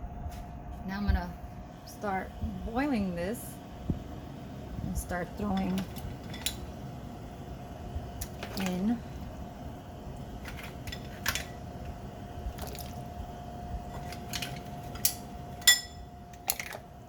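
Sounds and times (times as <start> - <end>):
mussel shells clinking into pot: 13.9 - 16.9.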